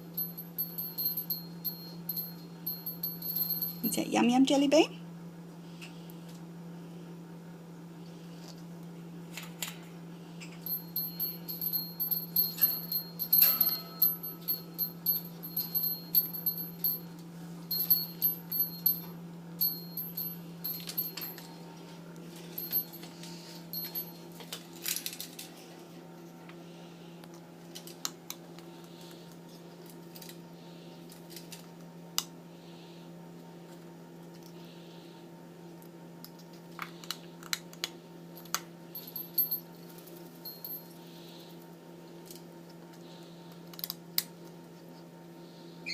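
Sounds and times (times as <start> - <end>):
steady low hum: 0.0 - 45.9.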